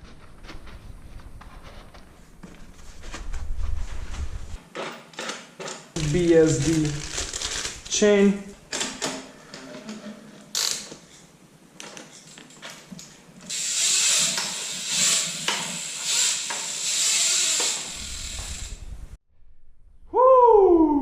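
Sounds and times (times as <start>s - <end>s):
bike drivetrain ratcheting: 13.5s - 19.2s.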